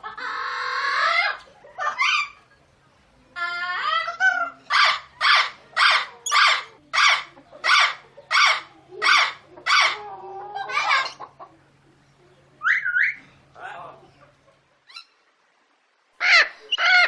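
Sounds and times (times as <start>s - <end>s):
parrot calling and squawking: 0.1s - 2.5s, 3.4s - 11.3s, 12.6s - 13.2s, 14.8s - 15.2s, 16.2s - 17.0s.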